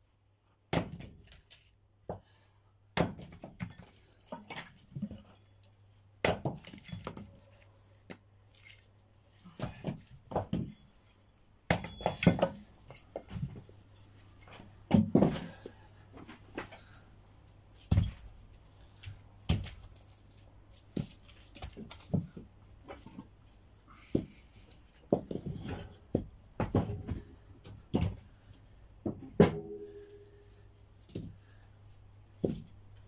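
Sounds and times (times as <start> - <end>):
faint low hum: 6.8 - 33.0.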